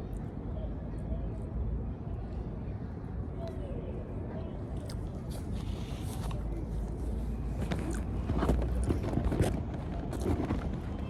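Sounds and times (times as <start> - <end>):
low outdoor rumble: 0.0 - 11.0.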